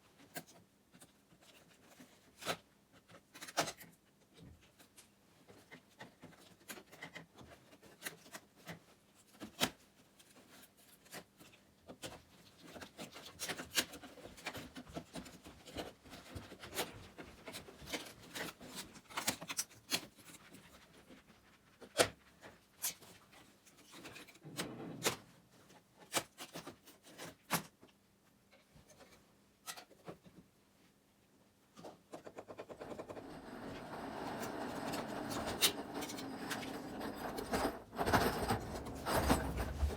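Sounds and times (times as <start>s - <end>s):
knocks and scrapes on wooden roof: 31.8s - 39.9s
soft rubbing: 38.6s - 39.9s.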